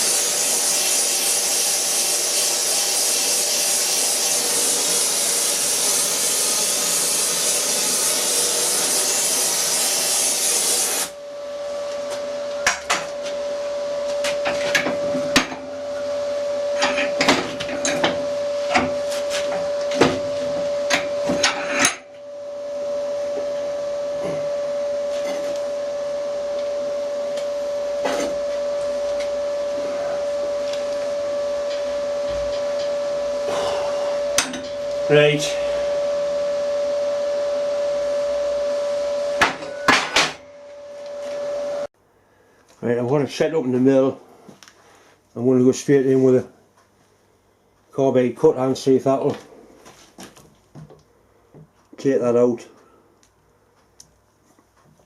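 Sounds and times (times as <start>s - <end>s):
machine hum: 3.6s - 42.3s.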